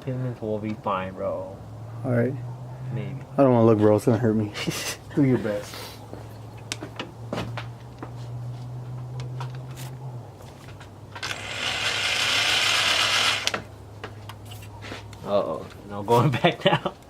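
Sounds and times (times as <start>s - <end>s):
drill grinding through material: 11.2s - 13.6s.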